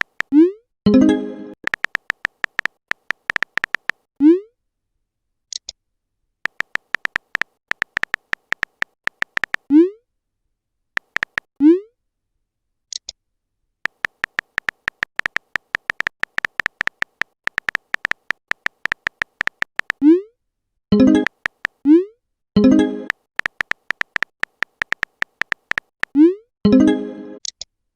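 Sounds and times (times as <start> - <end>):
rapid keyboard typing clicks: 0.0 - 0.4, 1.6 - 4.1, 6.5 - 9.7, 11.0 - 11.5, 13.9 - 20.0, 21.0 - 21.9, 22.6 - 26.2.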